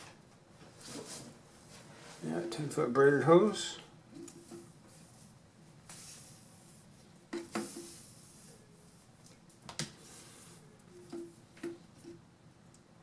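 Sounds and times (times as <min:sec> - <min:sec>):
hands rustling a hose: 0:04.2 - 0:12.2.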